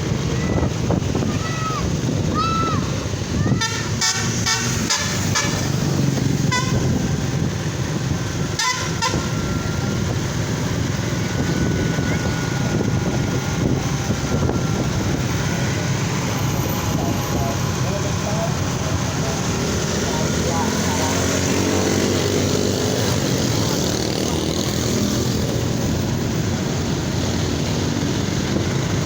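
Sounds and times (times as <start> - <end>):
bus engine rumble: 0.0 - 29.0
bus horn tooting: 3.5 - 7.2, 8.4 - 9.5.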